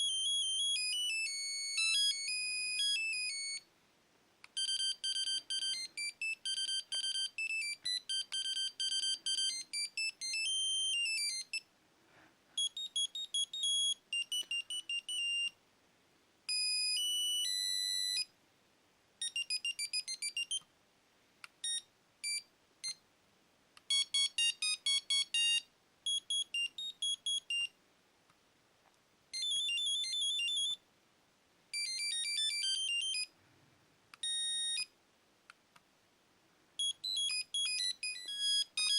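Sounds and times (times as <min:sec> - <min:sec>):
monophonic phone ringtones: 0:00.0 - 0:03.6, 0:04.6 - 0:11.6, 0:12.6 - 0:15.5, 0:19.2 - 0:20.6, 0:23.9 - 0:27.7, 0:29.4 - 0:30.8, 0:31.7 - 0:33.3, 0:34.2 - 0:34.9, 0:36.8 - 0:38.9.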